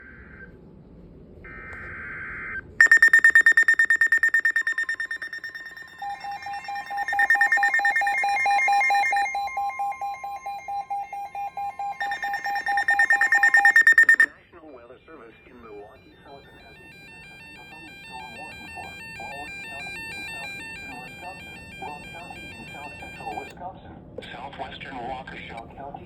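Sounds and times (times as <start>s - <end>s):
buzzing data burst: 2.8s - 14.3s
pulsing electronic alert beeps: 2.8s - 14.3s.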